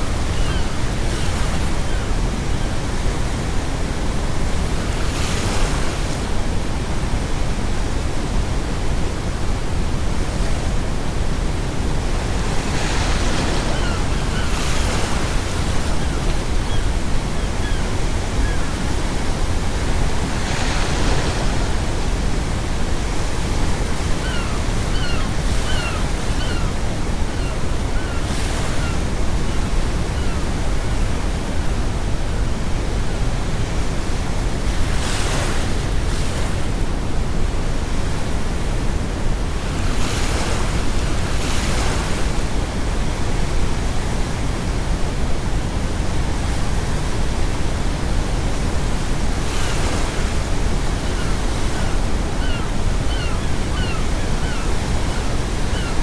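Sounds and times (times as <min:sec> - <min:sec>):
seagulls calling: 0:00.0 - 0:02.7, 0:13.0 - 0:18.9, 0:23.9 - 0:30.6, 0:50.9 - 0:56.0
ocean waves breaking: 0:11.4 - 0:30.3, 0:48.7 - 0:56.0.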